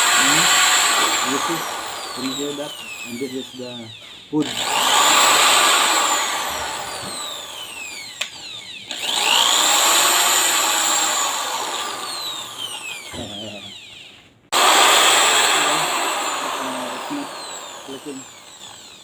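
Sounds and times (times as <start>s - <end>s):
electric drill running in bursts: 0.0s - 19.0s.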